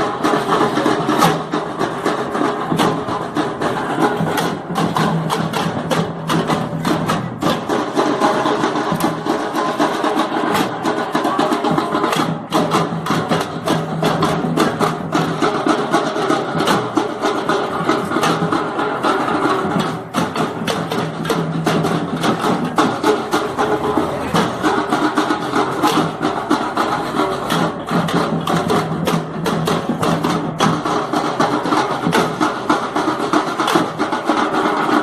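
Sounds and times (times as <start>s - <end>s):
group drumming fast rhythm: 0.0s - 35.0s.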